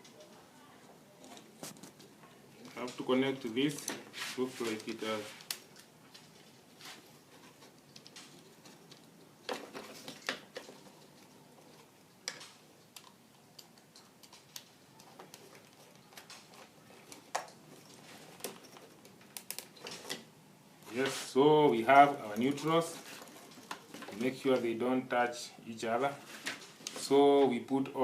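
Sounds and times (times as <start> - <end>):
clicks and taps of wires: 12.2 - 17.6, 18.4 - 20.2.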